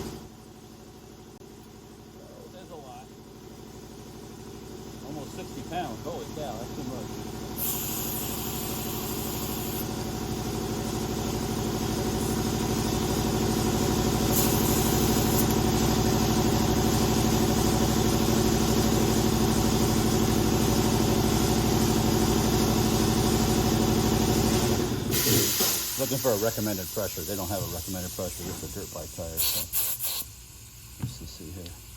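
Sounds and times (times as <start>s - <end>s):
air compressor running: 0.0s - 31.9s
air hissing: 7.6s - 10.0s, 13.8s - 16.0s, 25.1s - 31.9s.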